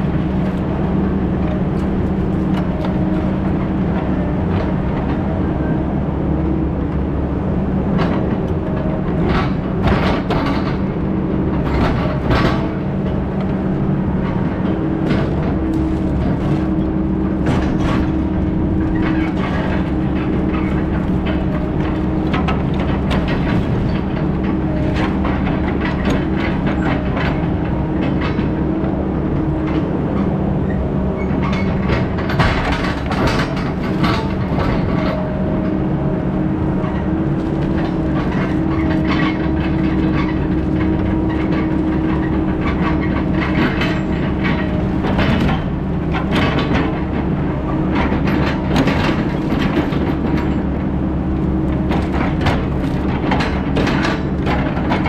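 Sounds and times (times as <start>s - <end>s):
heavy diesel engine running: 0.0s - 55.0s
rattling and clanking: 8.0s - 55.0s.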